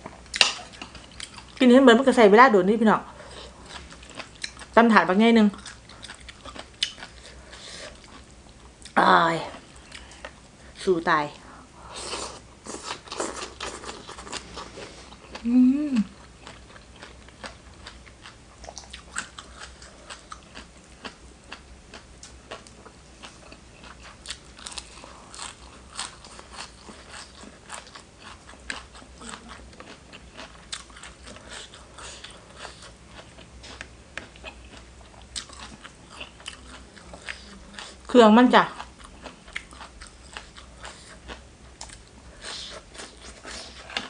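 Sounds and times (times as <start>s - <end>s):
crunchy chewing: 5.5s - 10.4s, 12.0s - 38.1s, 38.7s - 44.0s.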